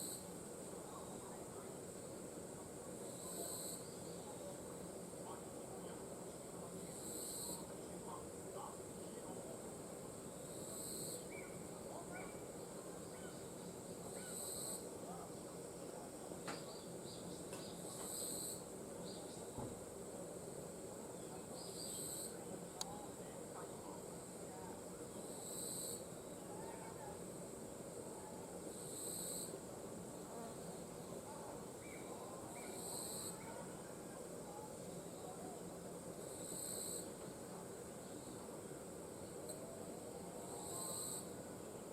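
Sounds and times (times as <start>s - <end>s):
insect buzz: 0.0s - 41.9s
insects droning: 0.0s - 41.9s
faint bird chirps: 10.8s - 14.8s, 21.2s - 23.0s, 31.3s - 35.6s, 40.5s - 41.3s.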